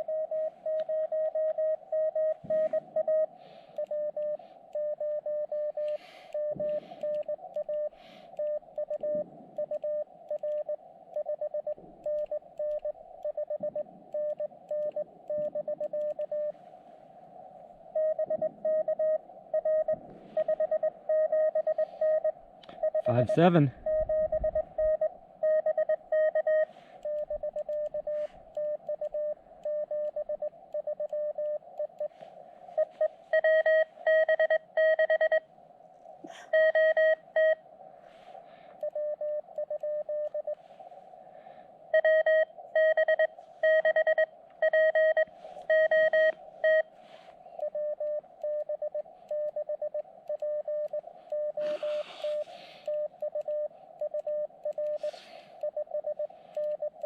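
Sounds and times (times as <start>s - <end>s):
morse code tone: 18.0s - 30.3s, 42.0s - 46.9s.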